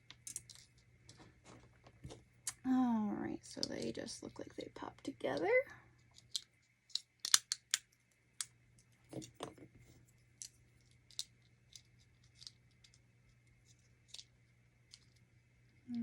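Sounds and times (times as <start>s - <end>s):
model kit pieces clicking: 0.1s - 0.7s, 6.2s - 8.5s, 10.4s - 13.0s.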